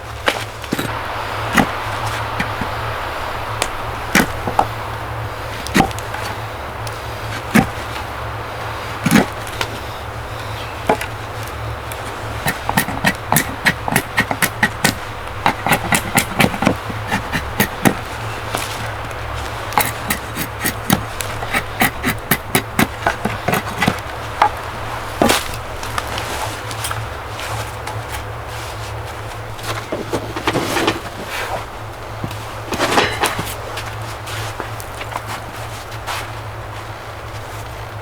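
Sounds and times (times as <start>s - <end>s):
steady low rumble: 0.0s - 29.9s
knocks and taps on wood: 12.4s - 18.7s.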